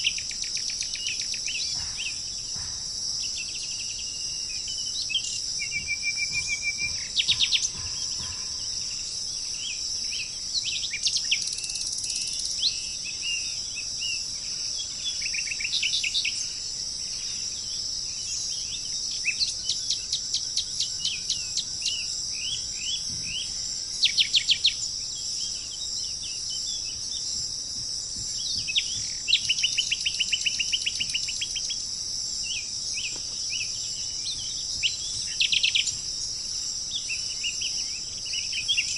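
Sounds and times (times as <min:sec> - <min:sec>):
crickets chirring: 0:00.0 - 0:38.9
songbirds chirping: 0:00.0 - 0:38.9.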